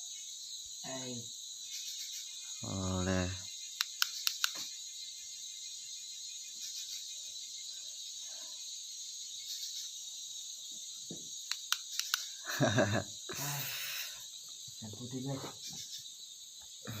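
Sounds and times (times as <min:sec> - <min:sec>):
insects chirping chorus: 0:00.0 - 0:17.0
sharp clicks: 0:03.8 - 0:04.7, 0:11.4 - 0:12.4.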